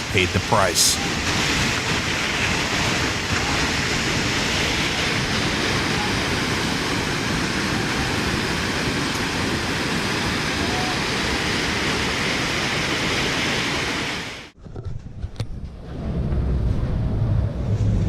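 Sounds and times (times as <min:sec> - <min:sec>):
flooded river rushing: 0:00.0 - 0:14.3.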